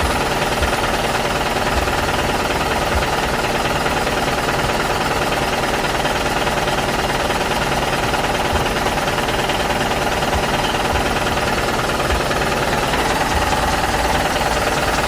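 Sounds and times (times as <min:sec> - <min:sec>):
small motor rattling: 0:12.7 - 0:15.0.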